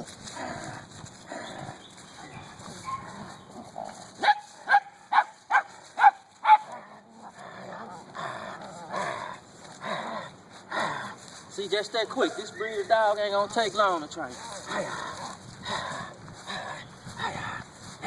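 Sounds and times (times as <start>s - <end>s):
scuffling noises: 0.0s - 18.0s
puppy barking: 2.8s - 3.2s, 4.2s - 6.8s.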